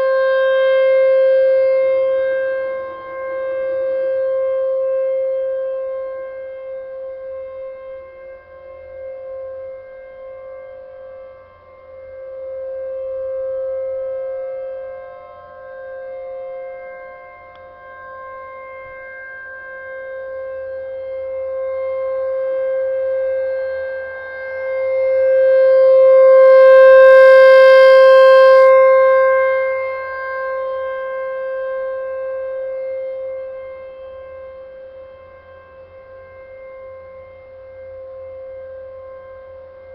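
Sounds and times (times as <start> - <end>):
rotating warning siren: 26.4 - 28.7.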